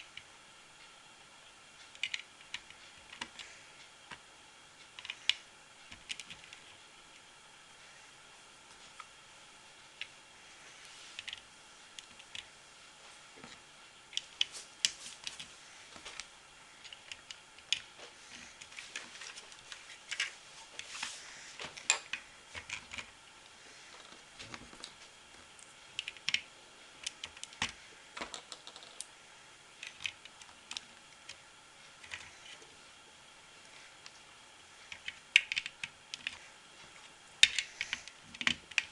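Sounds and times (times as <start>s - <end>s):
plastic bricks clicking and clattering: 27.0s - 29.1s.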